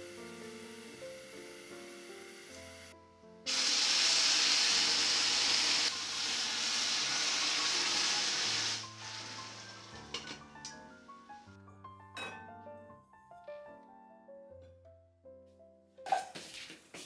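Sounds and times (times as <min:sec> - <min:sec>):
food sizzling in a hot pan: 0:00.0 - 0:02.9, 0:03.5 - 0:10.6.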